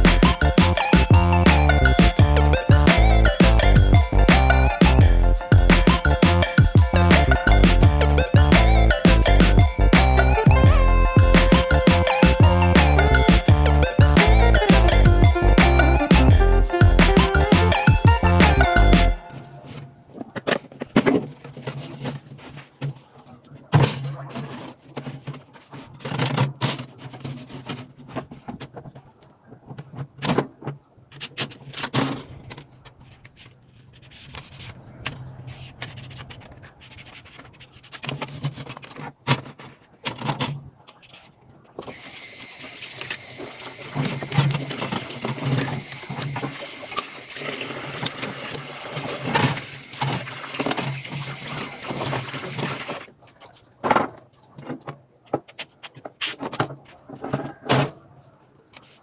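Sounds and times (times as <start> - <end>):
water running: 0.0 - 18.9, 41.9 - 53.4
knocks and clatter of handling: 19.7 - 41.9, 53.8 - 58.1.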